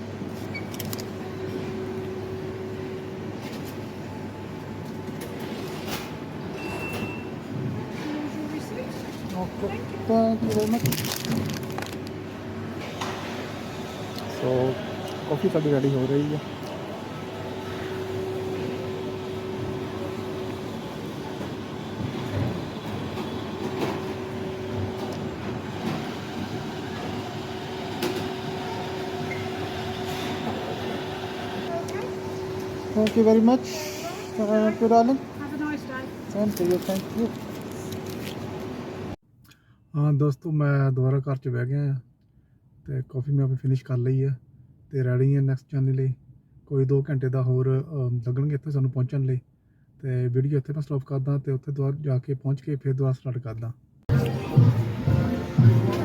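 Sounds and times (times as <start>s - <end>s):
coffee machine running: 11.6s - 39.2s
machine hum: 54.1s - 56.0s.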